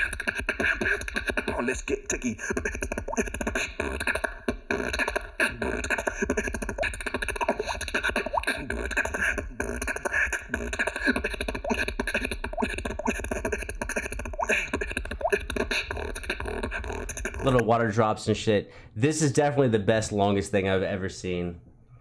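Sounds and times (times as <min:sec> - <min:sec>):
beatboxing: 0:00.0 - 0:18.0
mouth water-drop clicks: 0:02.4 - 0:17.7.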